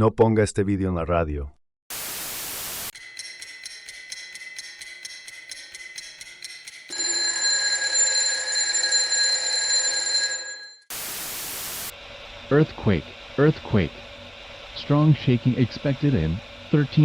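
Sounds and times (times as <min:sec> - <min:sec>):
burst of static hiss: 0:01.9 - 0:02.9, 0:10.9 - 0:11.9
steady multi-tone alarm: 0:01.9 - 0:11.9.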